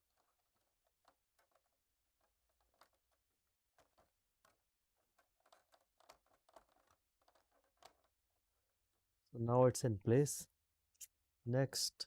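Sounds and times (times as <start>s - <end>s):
faint handling sounds: 0.0s - 9.3s.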